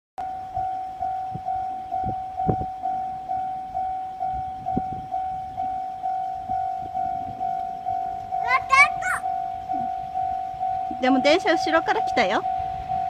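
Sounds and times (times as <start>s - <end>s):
level crossing warning bell: 0.2s - 13.0s.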